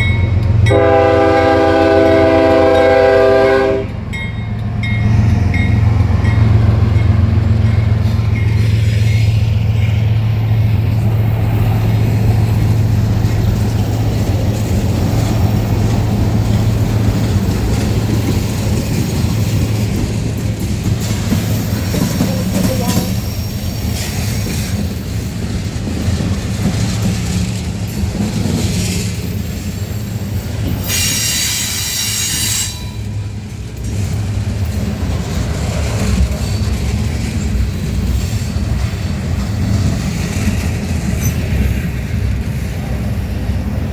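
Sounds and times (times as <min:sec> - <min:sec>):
steel wheels rumbling on rail: 0:00.0 - 0:43.9
high-pitched wheel squeal: 0:30.8 - 0:33.1.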